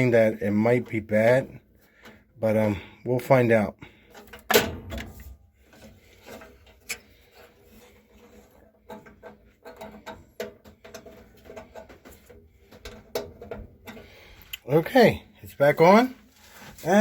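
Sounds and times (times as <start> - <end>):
hands clicking and knocking on furnace: 8.4 - 14.2.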